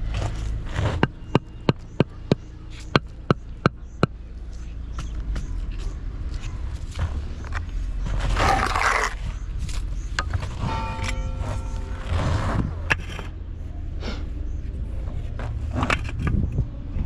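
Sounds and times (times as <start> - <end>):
low rumble: 0.0 - 17.0
rough scraping noise: 6.9 - 14.3.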